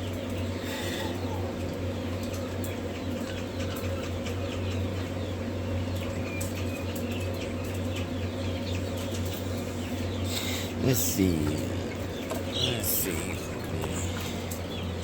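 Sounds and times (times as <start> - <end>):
low machine hum: 0.0 - 15.0
quail chicks peeping: 0.0 - 15.0.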